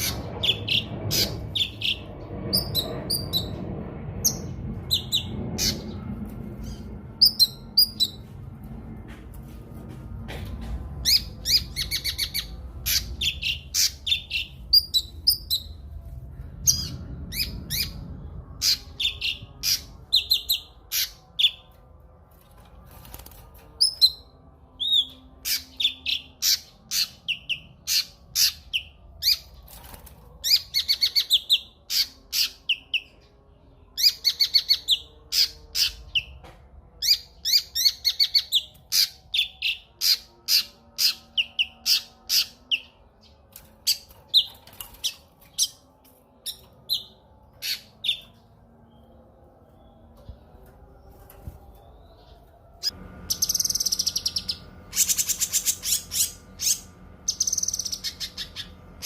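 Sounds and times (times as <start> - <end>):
songbird singing: 23.8 - 59.0.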